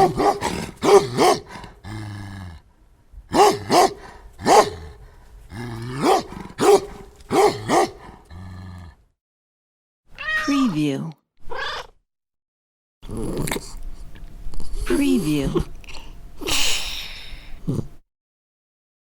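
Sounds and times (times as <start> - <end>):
dog barking angrily: 0.0 - 2.1, 3.3 - 8.4
dog growling: 0.0 - 2.7, 3.3 - 9.1, 13.0 - 13.8.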